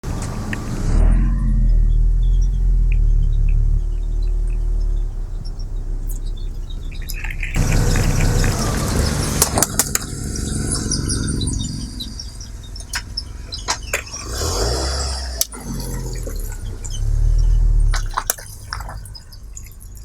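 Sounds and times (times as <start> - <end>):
low rumble: 0.0 - 20.0
wet squelching liquid: 15.3 - 20.0.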